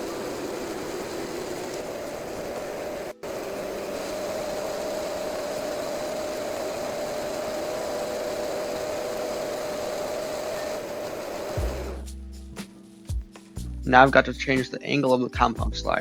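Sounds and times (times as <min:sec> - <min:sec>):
lathe running: 0:00.0 - 0:12.0.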